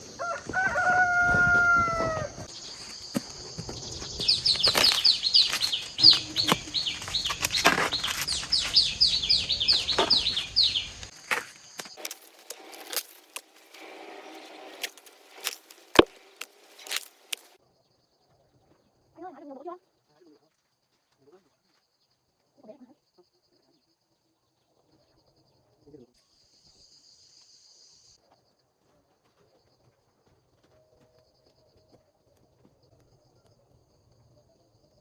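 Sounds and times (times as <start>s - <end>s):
rooster crowing: 0.1s - 2.4s
small bird chirping: 2.5s - 17.6s.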